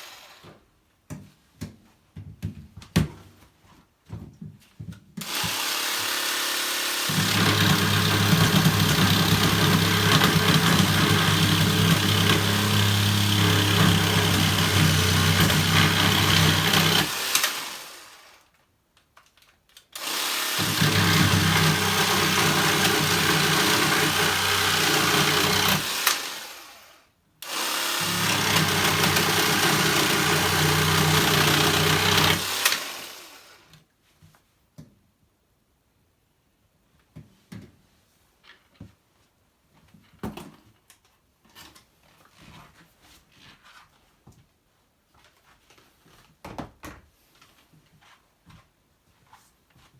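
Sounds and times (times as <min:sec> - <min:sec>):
cordless saw running: 0:00.0 - 0:00.5, 0:05.2 - 0:18.4, 0:20.0 - 0:33.7.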